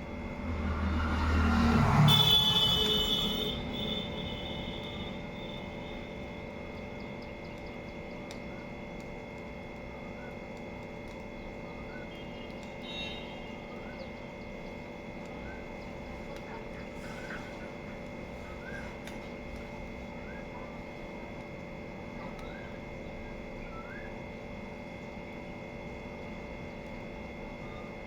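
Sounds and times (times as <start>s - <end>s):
steady hum: 0.0s - 28.0s
faint bird chirps: 11.8s - 16.0s, 18.4s - 19.0s.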